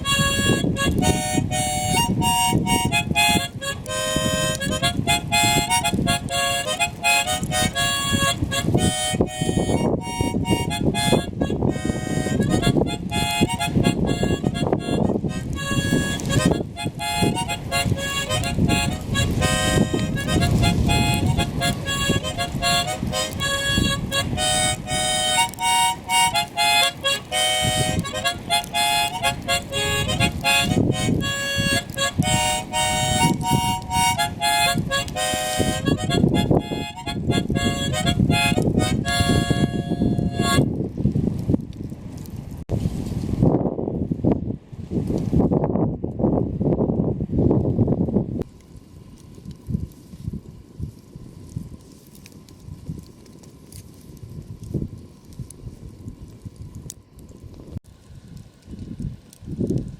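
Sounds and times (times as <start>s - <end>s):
background music with held melody: 0.1s - 40.4s.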